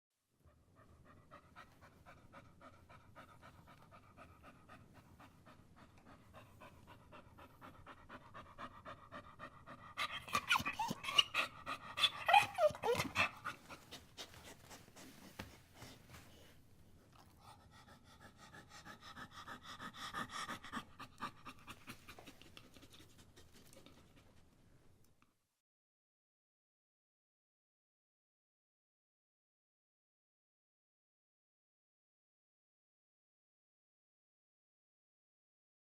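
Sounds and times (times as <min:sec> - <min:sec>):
dog panting: 0:00.5 - 0:24.5
dog whining and whimpering: 0:10.0 - 0:14.0.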